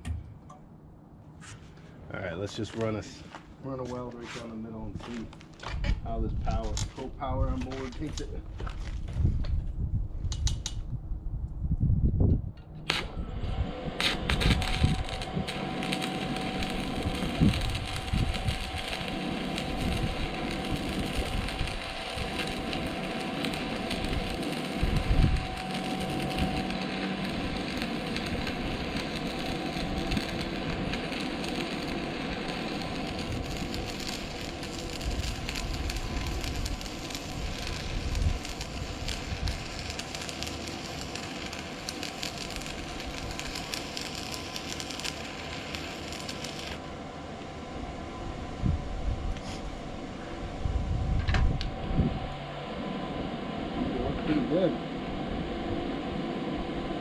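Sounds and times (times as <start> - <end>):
welding arc crackling: 12.9 - 46.9.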